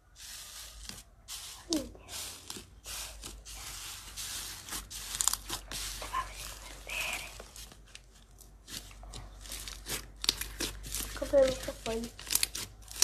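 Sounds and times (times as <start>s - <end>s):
slime crackling and popping: 4.9s - 5.7s, 8.3s - 13.0s.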